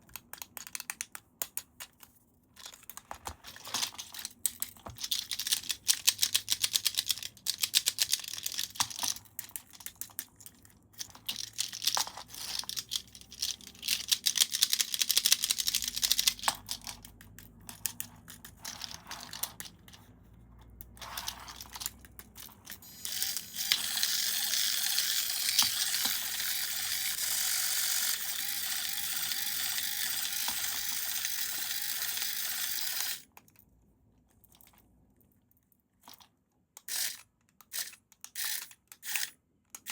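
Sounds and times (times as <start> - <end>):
toy parts and packaging rustling: 0.0 - 39.9
electric toy motor running: 22.8 - 33.2.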